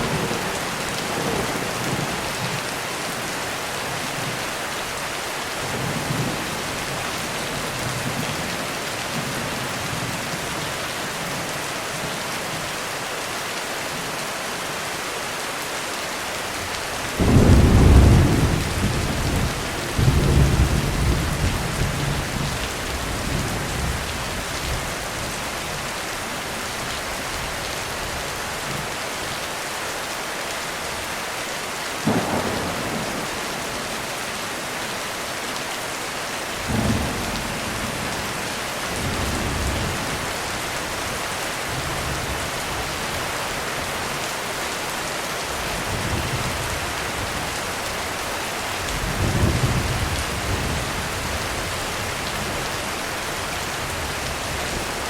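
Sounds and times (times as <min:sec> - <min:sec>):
thunder rumbling: 0:00.0 - 0:02.7, 0:17.2 - 0:24.2, 0:32.0 - 0:34.8
heavy rain falling: 0:00.0 - 0:55.0
sharp thunder cracks: 0:32.1 - 0:34.0.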